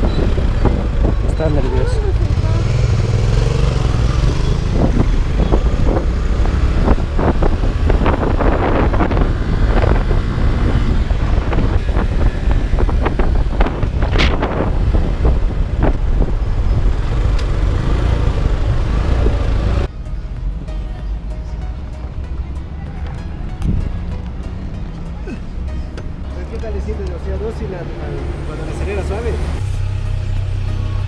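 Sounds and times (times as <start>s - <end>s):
wind buffeting microphone: 0.0s - 19.9s
vehicle low rumble: 0.0s - 31.0s.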